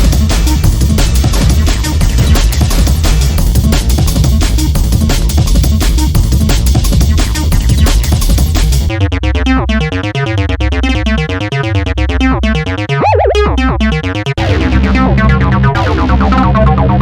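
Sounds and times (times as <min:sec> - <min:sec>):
electronic synthesizer music: 0:08.9 - 0:17.0.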